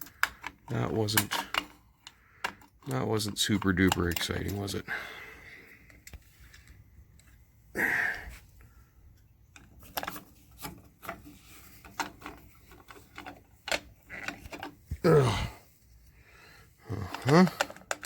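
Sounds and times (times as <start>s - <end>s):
hands clicking and tapping plastic: 0.0s - 4.7s, 16.9s - 18.0s.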